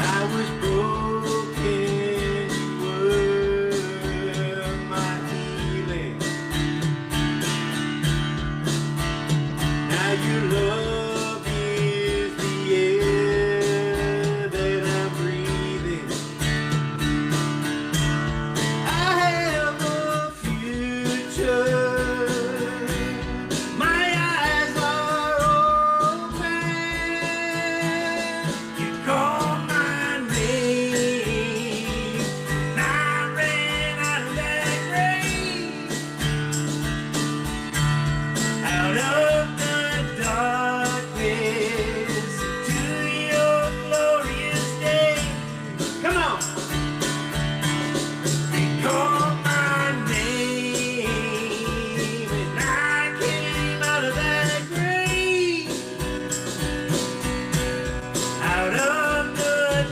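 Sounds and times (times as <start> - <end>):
worship song singing: 0.0 - 6.4, 9.9 - 16.4, 18.8 - 36.2, 38.6 - 45.4, 48.6 - 55.9, 58.3 - 59.9
guitar accompaniment: 0.0 - 59.9
steady beat: 0.0 - 59.9.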